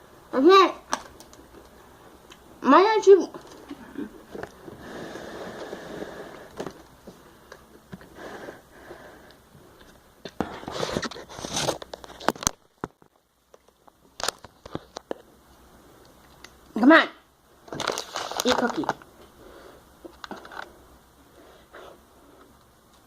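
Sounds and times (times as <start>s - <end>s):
rustling and scraping handling: 3.3s - 9.0s, 9.6s - 15.3s.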